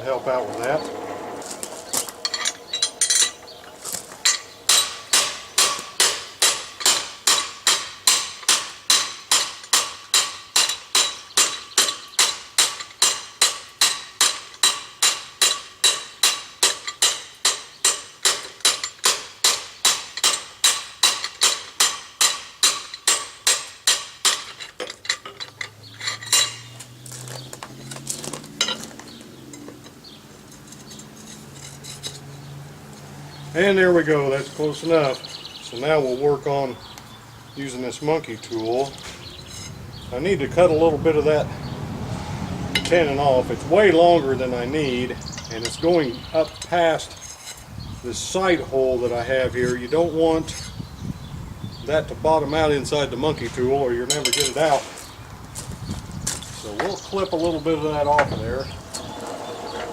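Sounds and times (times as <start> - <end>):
hammer striking hot steel on anvil: 4.2 - 24.6.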